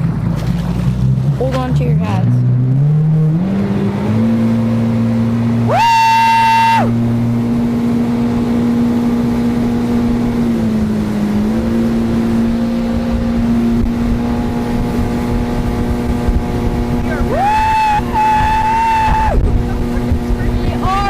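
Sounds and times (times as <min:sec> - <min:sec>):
boat engine running: 0:00.0 - 0:21.0
rushing wind and water: 0:00.0 - 0:21.0
person shouting woo: 0:05.7 - 0:07.0, 0:17.2 - 0:19.4.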